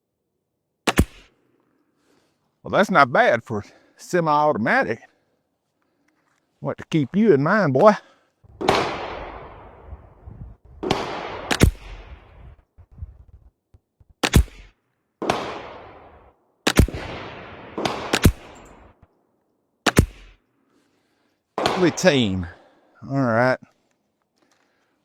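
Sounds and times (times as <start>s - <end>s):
rifle shots with echo: 0.9s - 1.4s, 8.5s - 10.2s, 10.8s - 12.5s, 14.2s - 19.1s, 19.8s - 20.4s, 21.6s - 22.8s.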